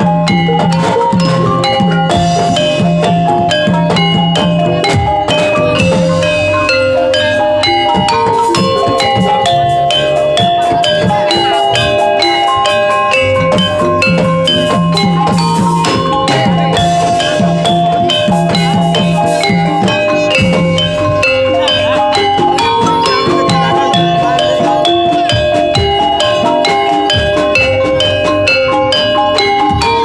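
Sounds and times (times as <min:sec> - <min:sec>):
drums: 0:00.0 - 0:30.0
gamelan metal keys melody: 0:00.0 - 0:30.0.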